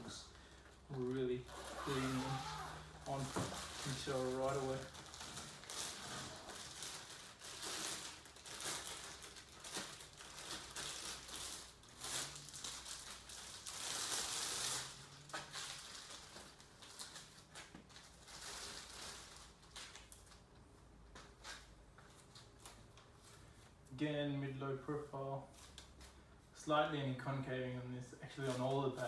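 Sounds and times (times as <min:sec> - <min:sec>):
plastic packaging rustling: 0:00.4 - 0:20.6.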